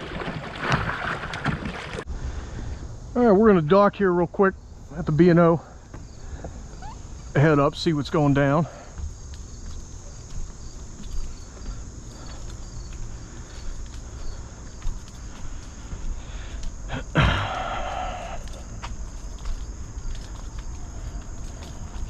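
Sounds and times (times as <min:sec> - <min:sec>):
kayak scraping: 0:00.0 - 0:02.1
crickets trilling: 0:00.0 - 0:22.0
footsteps walking: 0:08.8 - 0:16.9, 0:17.8 - 0:22.0.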